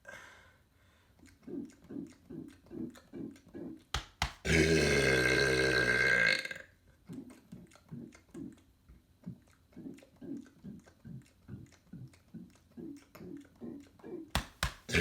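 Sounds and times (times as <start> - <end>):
man burping loudly: 4.4 - 6.7.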